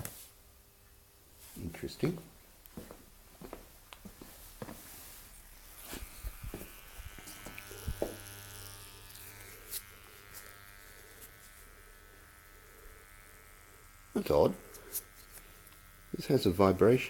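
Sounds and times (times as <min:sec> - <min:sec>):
dishwasher pump motor buzzing: 0:05.6 - 0:16.8.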